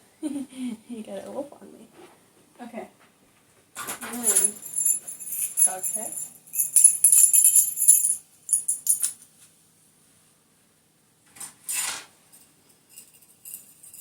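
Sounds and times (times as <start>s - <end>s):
metal jewellery jingling: 4.0s - 9.2s, 12.9s - 14.0s.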